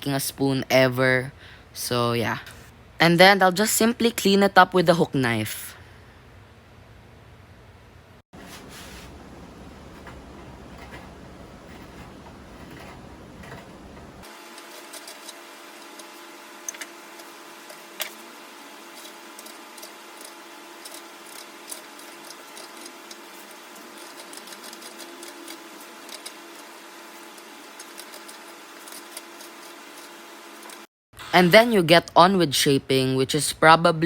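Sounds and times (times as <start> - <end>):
low hum: 6.0 - 14.3
knife carving wood: 18.9 - 30.9.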